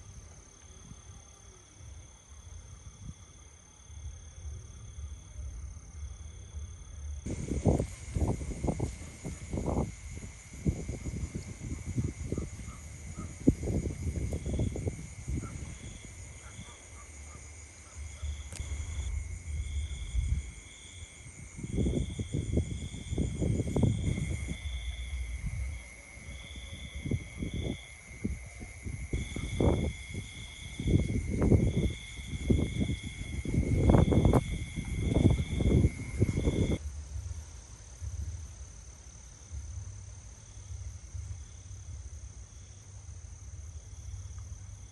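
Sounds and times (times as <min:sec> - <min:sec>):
high insect drone: 0:00.0 - 0:44.9
insects chirping: 0:00.0 - 0:44.9
wind buffeting microphone: 0:07.3 - 0:17.3, 0:18.0 - 0:36.8.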